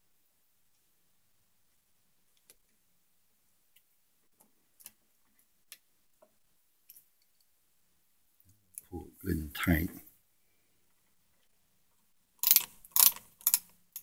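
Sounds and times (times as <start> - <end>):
screwdriver clicking on screw: 12.4 - 14.0.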